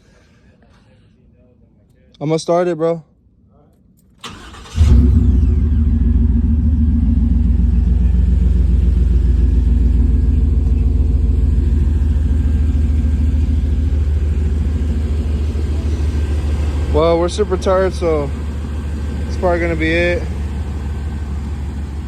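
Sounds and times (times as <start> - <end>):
engine cranking: 4.2 - 5.8, 12.8 - 22.0
truck engine running: 4.3 - 22.0.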